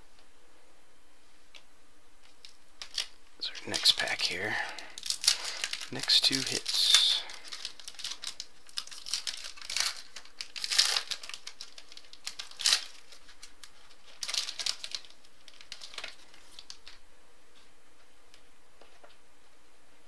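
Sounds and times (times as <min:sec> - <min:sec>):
wrapper tearing and crinkling: 0:02.2 - 0:17.0.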